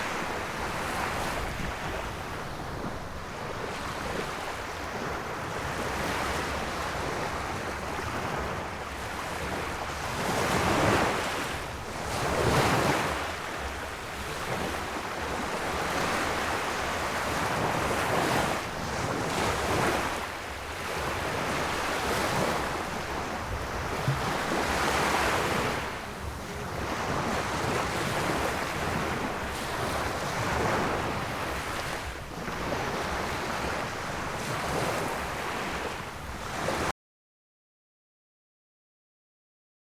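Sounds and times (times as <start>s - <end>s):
sea waves surging: 0.0s - 36.9s.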